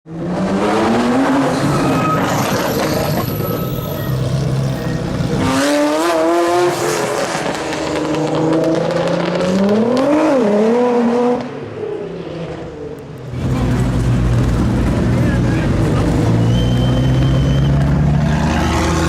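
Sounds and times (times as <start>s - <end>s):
car engine accelerating hard: 13.3s - 19.0s.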